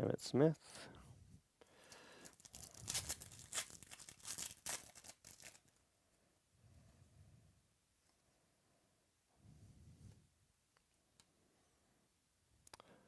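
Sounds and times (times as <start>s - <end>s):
foil wrapper tearing and crinkling: 2.2s - 5.8s.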